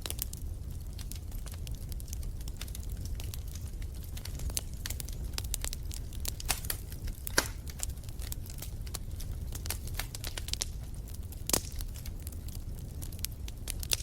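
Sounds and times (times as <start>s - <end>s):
wood fire crackling: 0.0s - 14.0s.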